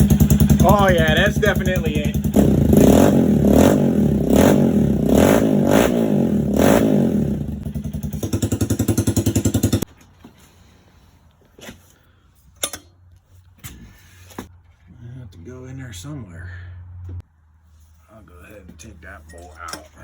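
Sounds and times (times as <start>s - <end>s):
motorcycle engine idling: 0.0s - 5.0s, 7.1s - 9.9s
motorcycle engine revving: 0.0s - 9.9s.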